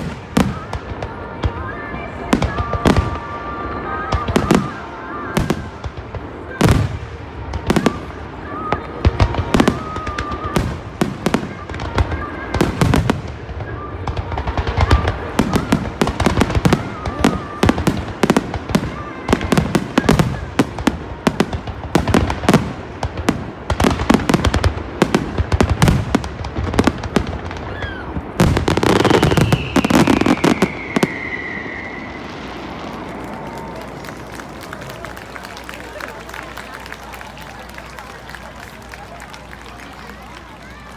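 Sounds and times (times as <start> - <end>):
fireworks booming bangs: 0.0 - 39.0
falling firework whistle: 7.6 - 21.4, 27.6 - 36.1.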